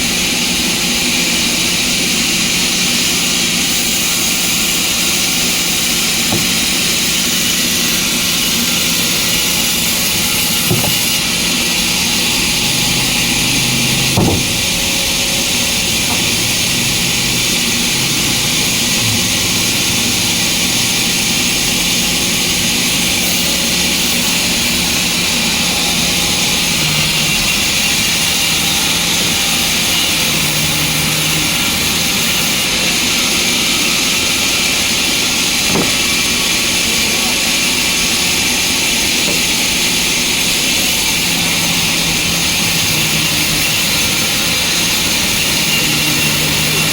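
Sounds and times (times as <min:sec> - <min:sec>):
sawmill machine hissing: 0:00.0 - 0:46.9
brief knock: 0:06.3 - 0:06.8, 0:10.6 - 0:11.2, 0:14.2 - 0:14.7, 0:35.7 - 0:36.0.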